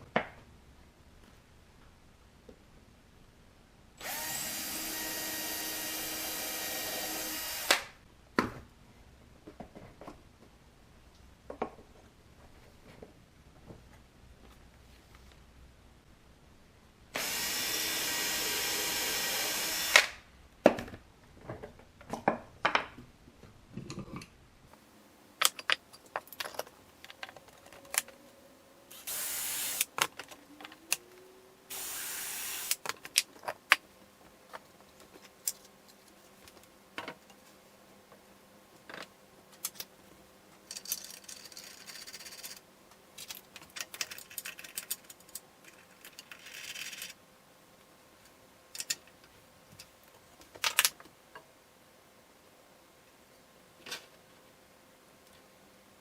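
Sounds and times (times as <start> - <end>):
power tool running: 4.0 - 7.9, 17.2 - 20.2, 28.9 - 29.9, 31.7 - 32.8.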